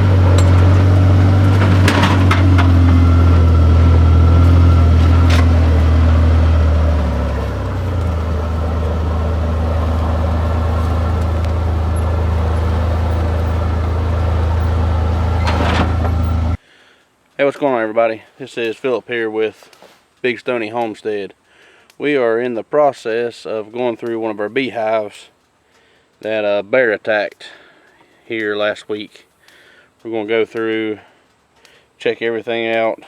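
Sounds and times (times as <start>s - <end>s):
vehicle engine running: 0.0s - 16.6s.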